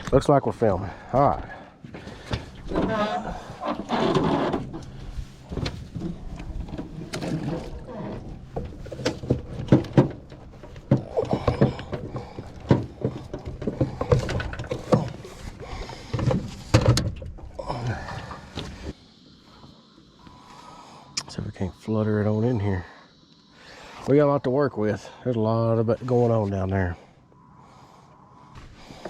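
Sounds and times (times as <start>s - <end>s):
fishing gear knocking and rattling: 4.6s - 18.9s.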